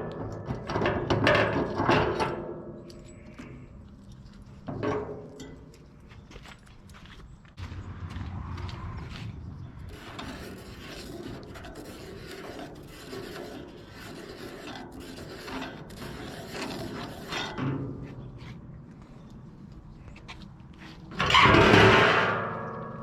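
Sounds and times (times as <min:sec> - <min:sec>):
rasping rubbing scrape: 0:09.2 - 0:17.6.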